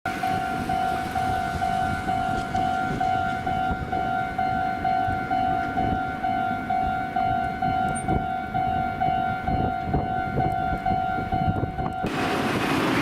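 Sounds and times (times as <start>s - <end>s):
level crossing warning bell: 0.1s - 12.2s.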